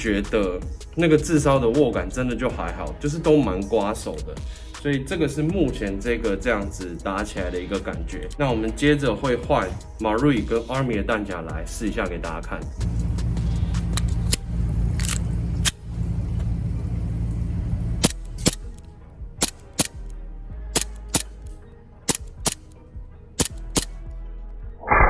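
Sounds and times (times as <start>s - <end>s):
background music: 0.0s - 25.0s
airsoft pistol sharp cracks: 18.0s - 18.8s, 19.4s - 20.1s, 20.8s - 22.8s, 23.4s - 24.0s.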